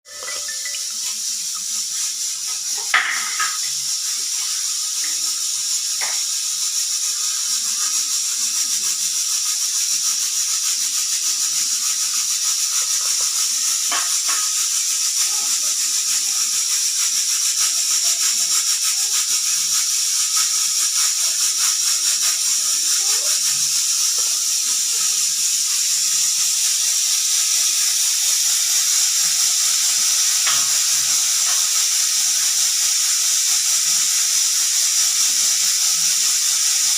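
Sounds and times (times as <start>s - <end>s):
pressure cooker hissing: 0.0s - 36.9s.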